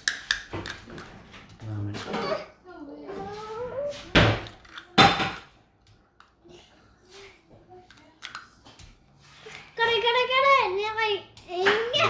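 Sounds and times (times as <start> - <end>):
plastic pieces clicking together: 4.4 - 5.0, 7.9 - 8.5.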